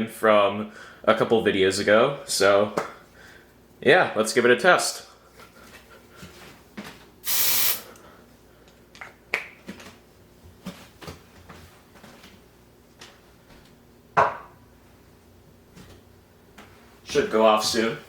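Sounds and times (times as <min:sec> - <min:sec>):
aerosol spray hiss: 0:07.2 - 0:08.0.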